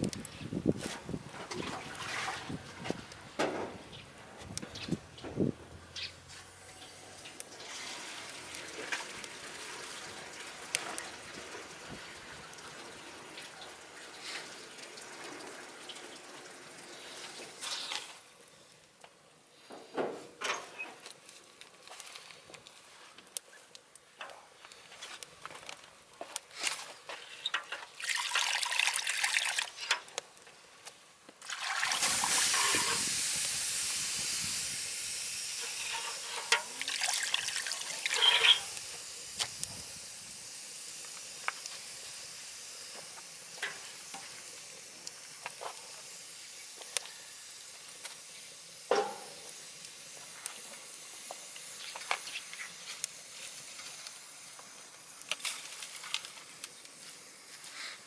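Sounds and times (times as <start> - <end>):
wood fire crackling and popping: 0.0 - 58.0
fire hissing: 4.5 - 28.4, 29.0 - 58.0.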